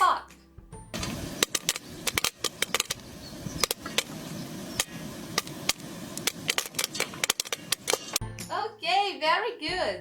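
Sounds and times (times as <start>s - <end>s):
popcorn popping: 0.9s - 8.5s
steady hiss: 1.0s - 8.2s.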